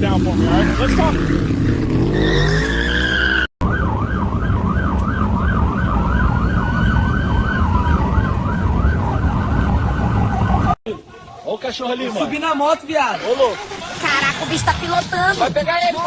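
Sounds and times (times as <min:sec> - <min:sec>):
siren tone falling in pitch: 0:02.3 - 0:10.8
police siren yelp: 0:03.2 - 0:10.8.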